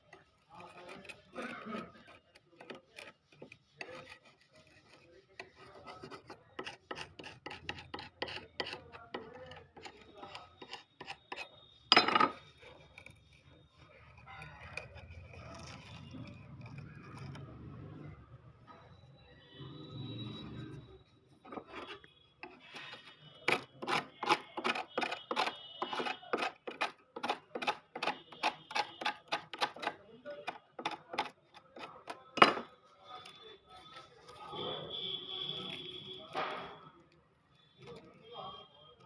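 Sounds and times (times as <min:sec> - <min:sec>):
hand tool scraping wood: 0:00.5 - 0:11.5, 0:21.4 - 0:32.7.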